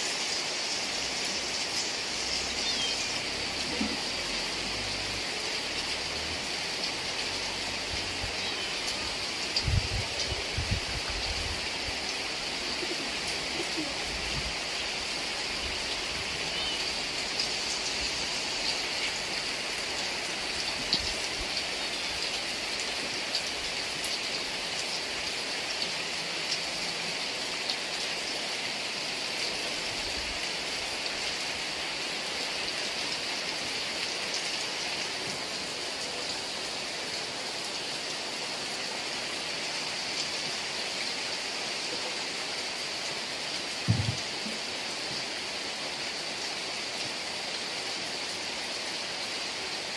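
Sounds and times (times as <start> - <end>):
heavy rain: 0.0 - 49.9
low thump: 43.9 - 44.2.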